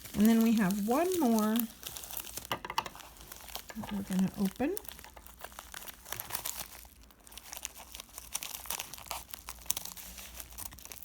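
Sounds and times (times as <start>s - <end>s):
plastic packaging crinkling: 0.0s - 11.0s.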